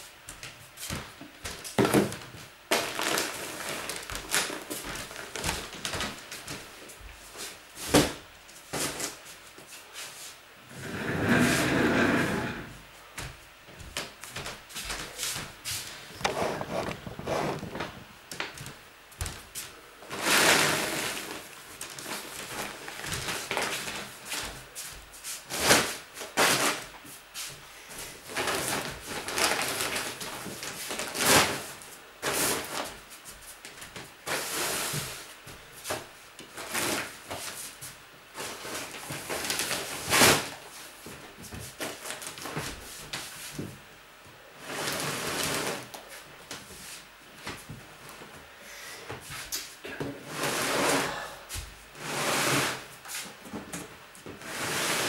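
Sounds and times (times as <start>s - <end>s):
boxes scraping and rustling: 10.0s - 12.8s, 15.2s - 18.0s, 44.6s - 46.2s, 49.2s - 51.2s, 54.3s - 55.0s.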